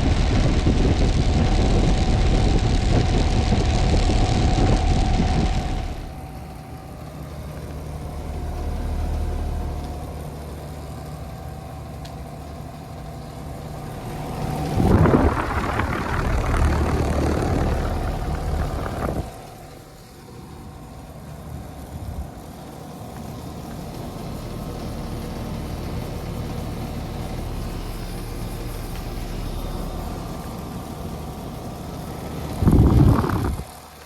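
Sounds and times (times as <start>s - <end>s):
heat pump compressor and fan hum: 0.0s - 34.0s
loud rushing noise: 13.6s - 20.0s.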